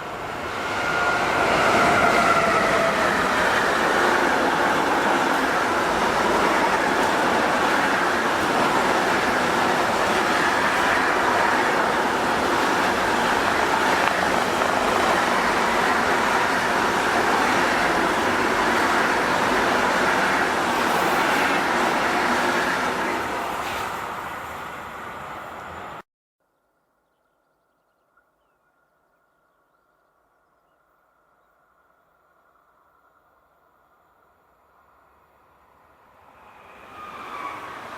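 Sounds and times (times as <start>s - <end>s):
train wheels rolling on rail: 0.0s - 26.0s, 34.8s - 37.9s.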